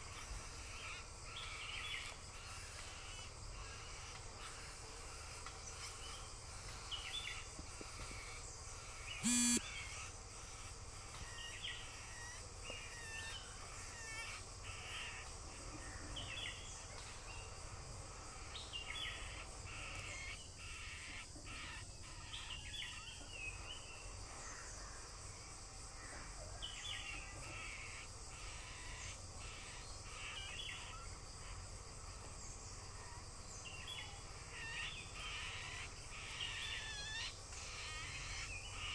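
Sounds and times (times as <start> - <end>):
birds chirping: 0.0 - 10.3.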